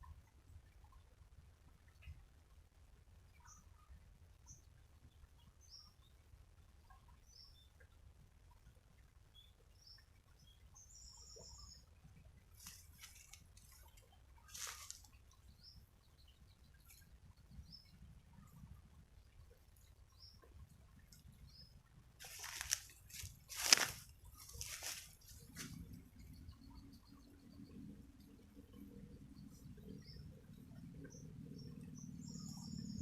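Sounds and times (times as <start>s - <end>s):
low background rumble: 0.0s - 33.0s
faint bird chirps: 3.3s - 6.2s, 9.3s - 33.0s
rustles: 12.5s - 15.3s, 22.2s - 26.0s.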